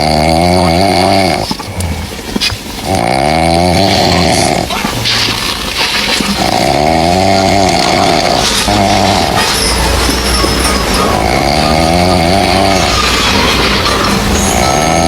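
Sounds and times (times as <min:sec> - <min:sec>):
cat snoring loudly: 0:00.0 - 0:02.2, 0:02.8 - 0:05.0, 0:06.2 - 0:15.0.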